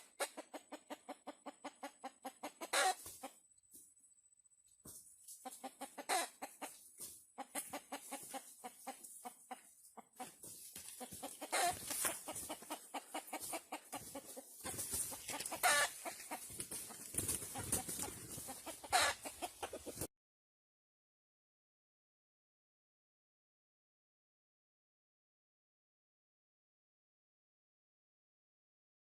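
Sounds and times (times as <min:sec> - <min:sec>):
chickens clucking: 0:00.0 - 0:03.7, 0:04.8 - 0:20.1.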